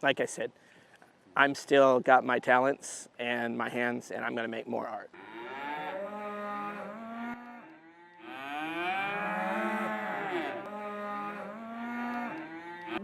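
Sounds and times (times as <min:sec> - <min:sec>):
cattle mooing: 0:05.2 - 0:13.0.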